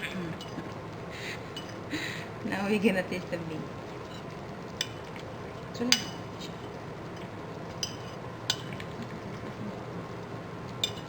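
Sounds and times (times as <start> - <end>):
low background hiss: 0.0 - 11.0
spoon clinking against a dish: 0.4 - 0.6, 1.5 - 1.8, 4.1 - 9.2, 10.8 - 11.0.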